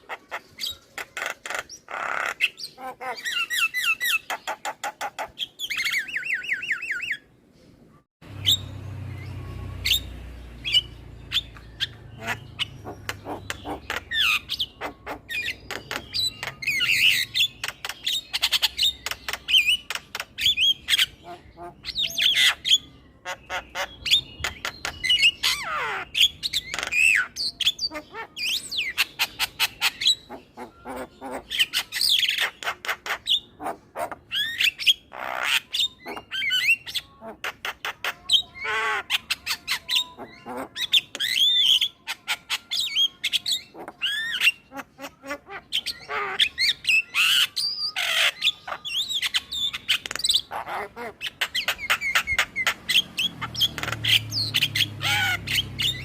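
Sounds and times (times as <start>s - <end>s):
myna chattering: 11.4s - 17.0s.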